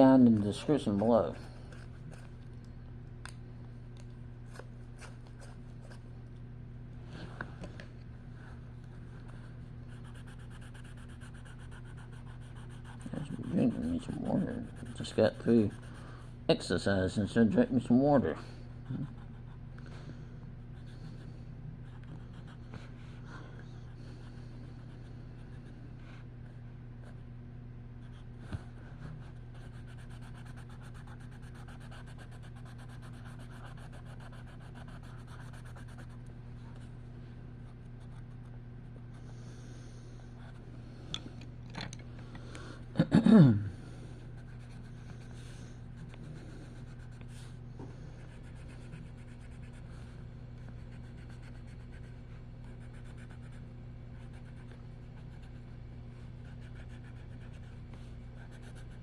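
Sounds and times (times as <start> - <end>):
steady low hum: 0.0 - 59.0
coloring strokes scratching paper: 9.4 - 16.0, 28.9 - 36.2, 48.2 - 49.9, 50.7 - 53.6, 54.2 - 55.6, 56.4 - 59.0.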